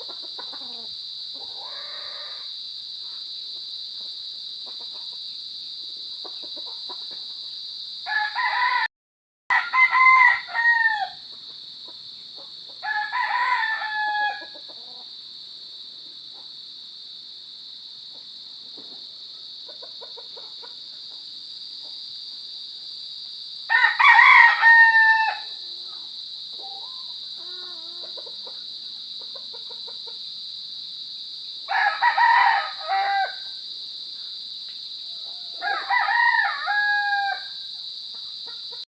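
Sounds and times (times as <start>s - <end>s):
rooster crowing: 0.0s - 2.5s, 8.0s - 8.9s, 9.5s - 11.3s, 12.8s - 15.1s, 23.7s - 25.7s, 31.7s - 33.6s, 35.1s - 37.7s
crickets chirring: 0.0s - 8.9s, 9.5s - 38.9s.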